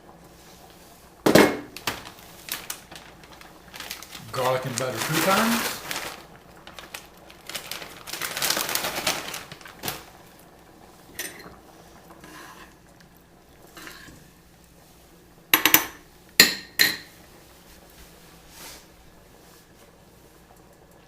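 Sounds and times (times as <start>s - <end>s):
bag crinkling: 1.7s - 10.6s
kitchenware clinking: 11.2s - 11.6s, 15.6s - 17.1s.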